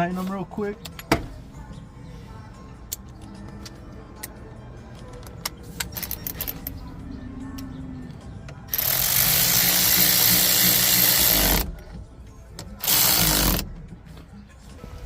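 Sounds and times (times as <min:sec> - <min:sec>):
handheld power tool running: 0:08.7 - 0:11.7, 0:12.8 - 0:13.6.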